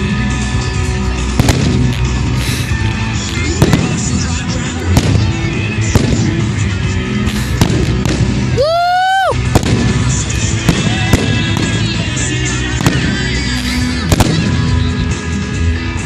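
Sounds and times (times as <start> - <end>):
fireworks exploding: 0.0 - 8.6, 9.3 - 15.3.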